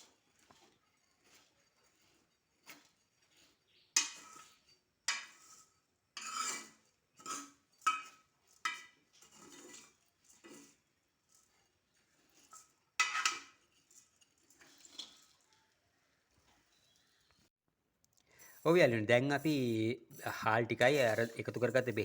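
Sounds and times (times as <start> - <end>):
spoon scraping in a wok: 0.0 - 15.8, 18.3 - 22.0.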